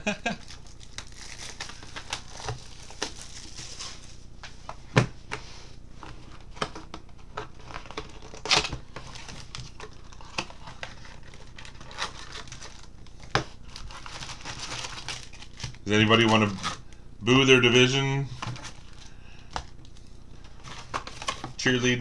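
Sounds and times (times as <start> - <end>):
wrappers crinkling and tearing: 0.2 - 4.3, 7.6 - 16.9.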